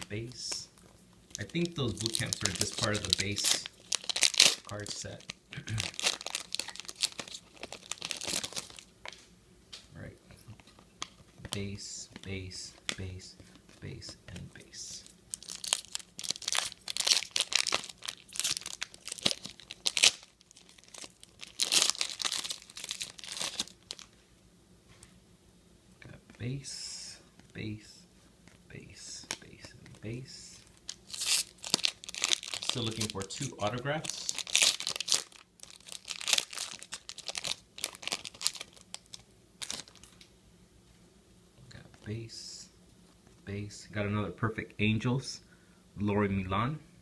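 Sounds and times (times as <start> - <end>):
wrapper being torn and crinkled: 1.3 - 9.2, 15.3 - 24.2, 30.7 - 40.2.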